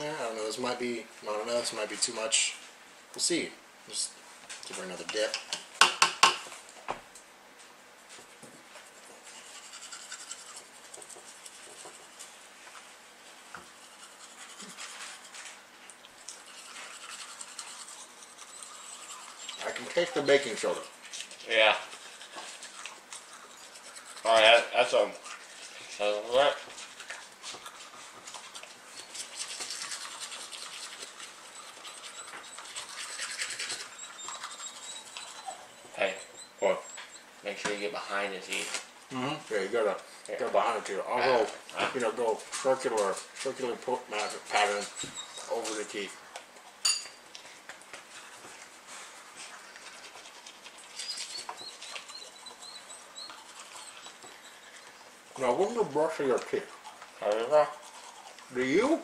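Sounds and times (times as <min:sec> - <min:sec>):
toothbrush scrubbing teeth: 0:08.9 - 0:12.4, 0:13.6 - 0:35.8, 0:48.0 - 0:59.0.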